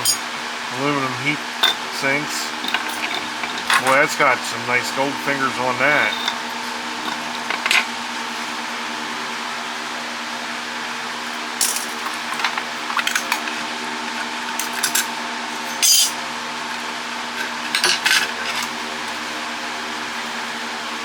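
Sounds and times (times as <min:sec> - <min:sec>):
metal parts and tools clinking: 0:00.0 - 0:00.3, 0:01.6 - 0:07.9, 0:15.8 - 0:16.2
steady hum: 0:00.0 - 0:13.6, 0:17.7 - 0:21.0.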